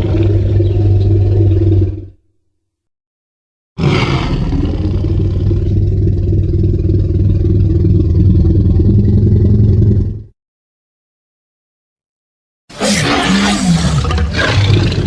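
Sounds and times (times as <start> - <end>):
low rumbling dinosaur growl: 0.0 - 2.3, 3.8 - 10.3, 12.8 - 15.0.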